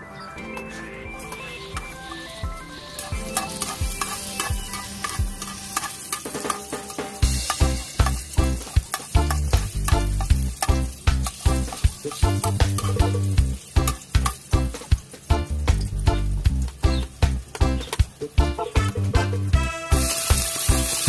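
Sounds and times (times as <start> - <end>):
background music: 0.0 - 21.0
food sizzling: 0.0 - 21.0
utensil scraping a pot: 0.5 - 13.2
heavy bass beat: 7.2 - 11.6, 12.2 - 14.7.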